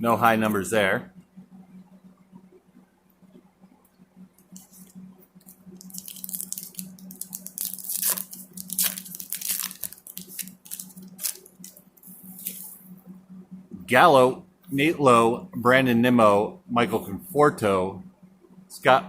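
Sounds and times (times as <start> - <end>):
wrapper tearing and crinkling: 5.8 - 12.8.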